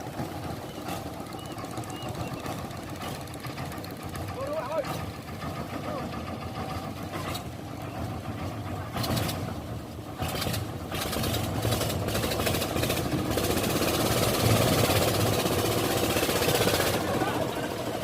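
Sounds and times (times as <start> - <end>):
heavy diesel engine running: 0.0 - 18.0.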